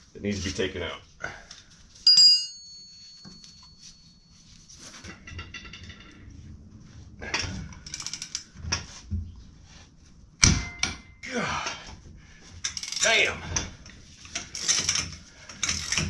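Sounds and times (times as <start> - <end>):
metallic ring: 2.0 - 6.2
metal clicks rattles and knocks: 12.6 - 16.0.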